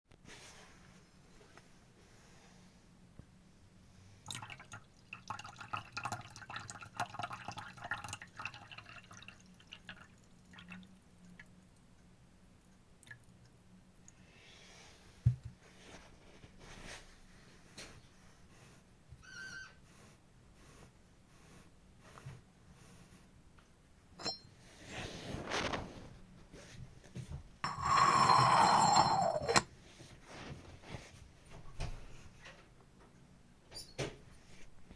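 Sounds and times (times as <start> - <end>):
water pouring: 4.3 - 10.9
faint high ringing: 24.2 - 24.6, 27.6 - 29.7
liquid pouring from teapot: 27.7 - 29.6.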